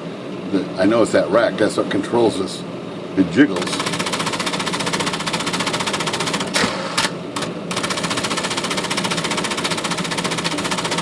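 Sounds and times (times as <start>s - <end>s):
electric typewriter clattering: 3.6s - 11.0s.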